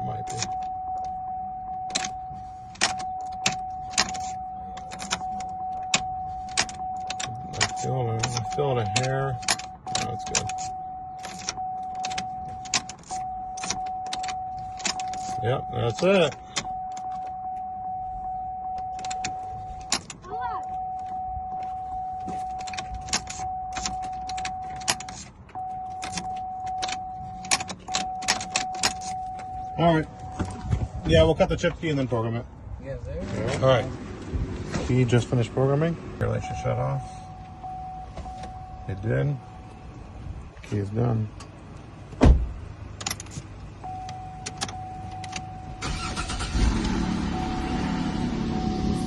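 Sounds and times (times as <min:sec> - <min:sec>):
car electronic warning tone: 0:00.0 - 0:32.1, 0:36.2 - 0:40.2, 0:43.2 - 0:49.0
keys jangling and clicking: 0:01.9 - 0:15.4, 0:18.7 - 0:29.6, 0:43.0 - 0:43.5.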